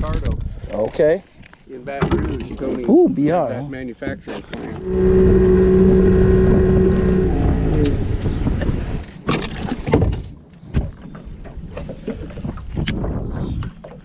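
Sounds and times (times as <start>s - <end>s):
boat motor humming: 4.6s - 10.4s.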